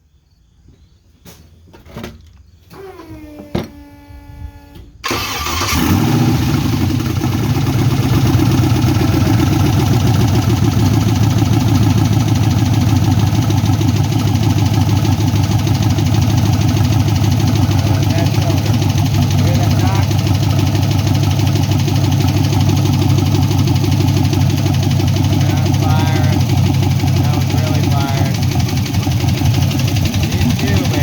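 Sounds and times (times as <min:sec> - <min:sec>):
starter motor cranking: 0:05.0 - 0:31.0
engine idling with knock: 0:06.4 - 0:31.0.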